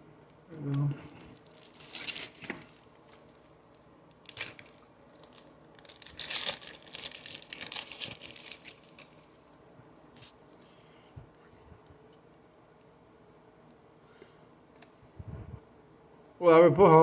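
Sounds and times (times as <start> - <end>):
plastic wrapper crinkling and tearing: 1.3 - 9.5.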